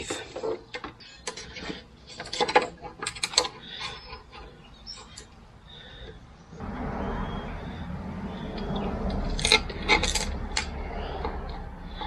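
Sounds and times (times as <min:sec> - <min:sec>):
small metallic clicks and rattles: 0:00.0 - 0:05.4, 0:08.6 - 0:12.0.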